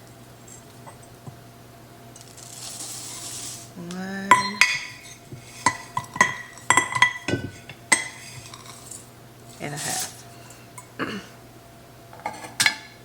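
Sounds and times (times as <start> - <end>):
soft hiss: 0.0 - 10.9
utensils clinking against bowl: 4.3 - 11.0, 12.2 - 13.0.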